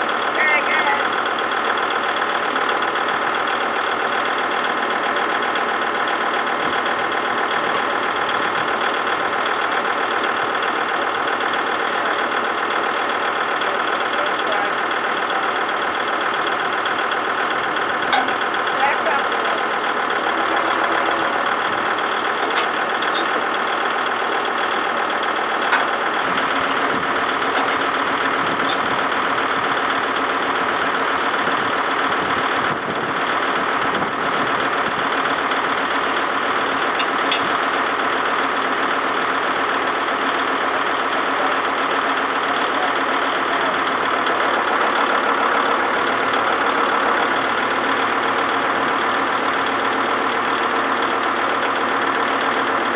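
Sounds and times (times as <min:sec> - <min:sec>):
diesel engine idling: 0:00.0 - 0:52.9.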